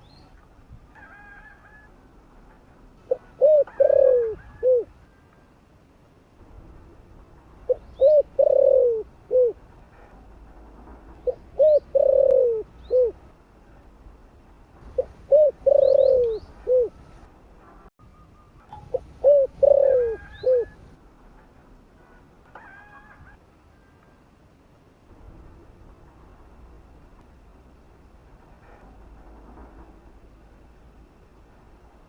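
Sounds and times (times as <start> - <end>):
dove cooing: 3.0 - 4.9, 7.7 - 9.6, 11.2 - 13.2, 14.9 - 17.0, 18.7 - 21.0.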